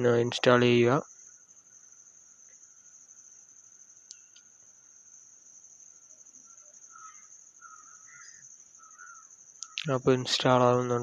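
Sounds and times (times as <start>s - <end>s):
cricket chirring: 0.0s - 11.0s
faint bird calls: 6.2s - 10.0s
faint click: 9.6s - 9.9s.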